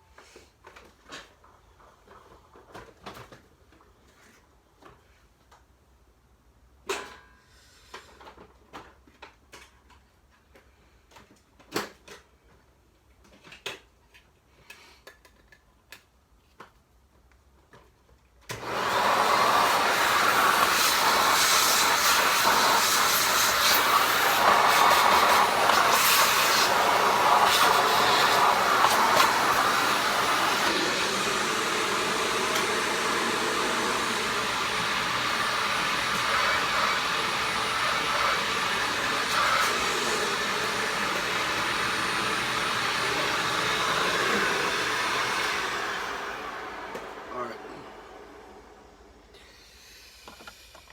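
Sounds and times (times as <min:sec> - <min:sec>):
vacuum cleaner motor running: 0:18.5 - 0:50.5.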